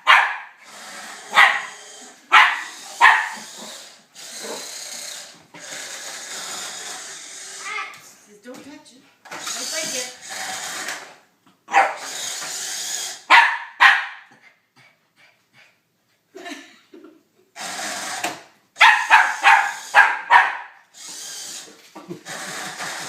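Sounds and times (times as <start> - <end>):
puppy barking: 0.0 - 0.6, 1.3 - 3.8, 11.7 - 12.0, 13.3 - 14.3, 18.8 - 20.8
toy car electric motor whirring: 0.6 - 8.2, 9.3 - 11.2, 12.0 - 13.3, 17.6 - 23.0.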